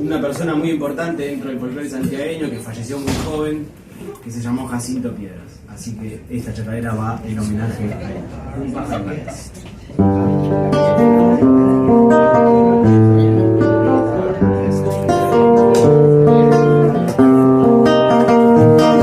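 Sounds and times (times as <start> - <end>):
strummed acoustic guitar: 10.0 - 19.0.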